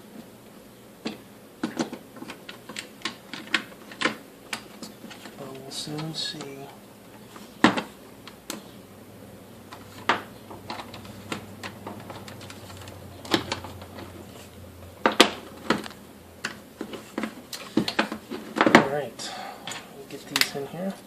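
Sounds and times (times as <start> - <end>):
plastic parts clicking and knocking: 1.0 - 6.5, 9.7 - 14.1, 15.0 - 18.9.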